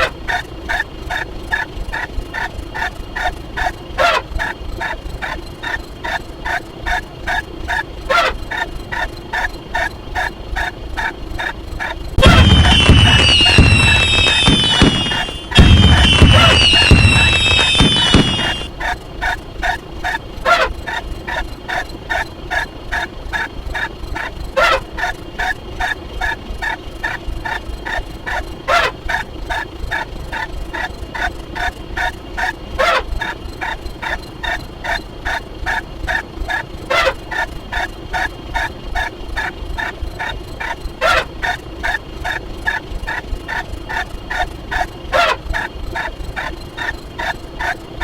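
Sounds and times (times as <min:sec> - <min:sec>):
firework whistles and bangs: 0:12.2 - 0:18.7
rapid pitched pulses: 0:12.2 - 0:18.7.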